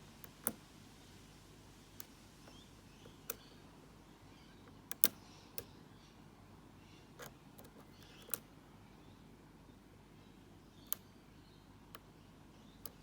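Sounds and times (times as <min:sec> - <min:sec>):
lock pick clicking pins: 0:04.7 - 0:05.7, 0:07.2 - 0:08.5, 0:12.8 - 0:13.0.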